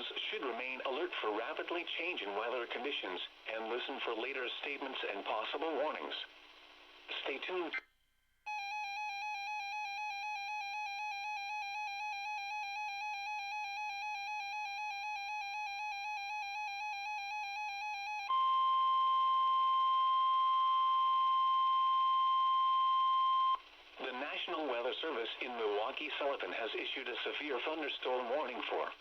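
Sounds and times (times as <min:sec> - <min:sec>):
light static: 0:00.0 - 0:08.5, 0:12.5 - 0:29.0
steady warning alarm tone: 0:08.5 - 0:23.6.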